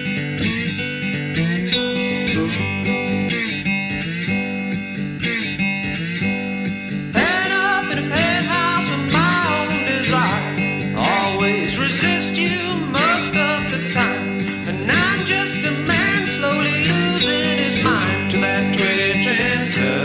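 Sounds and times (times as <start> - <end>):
plucked guitar: 0.0 - 20.0
person singing: 7.1 - 20.0.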